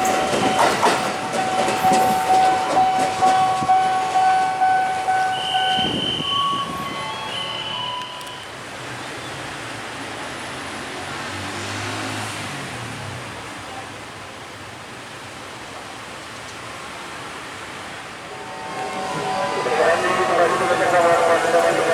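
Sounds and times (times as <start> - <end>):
train wheels rushing on rails: 0.0 - 10.6, 17.2 - 21.9
train horn: 1.3 - 8.5, 18.2 - 21.9.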